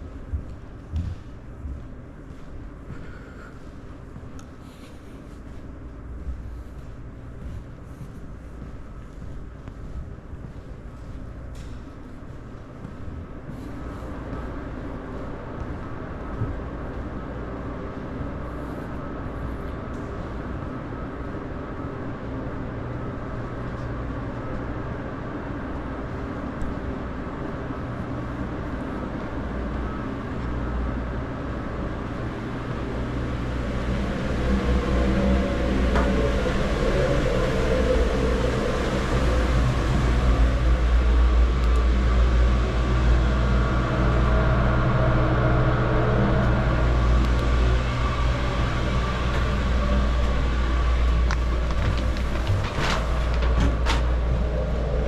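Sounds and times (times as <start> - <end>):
machinery hum with deep drone: 0.0 - 55.0
noisy rushing haze: 10.2 - 55.0.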